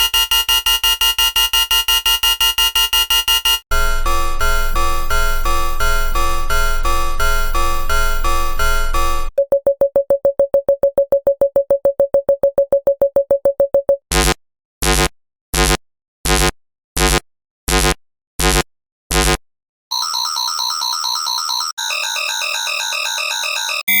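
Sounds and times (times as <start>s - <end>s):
buzzy alarm beeps: 0.1s - 10.8s
fast synthesized beeps: 4.4s - 14.0s.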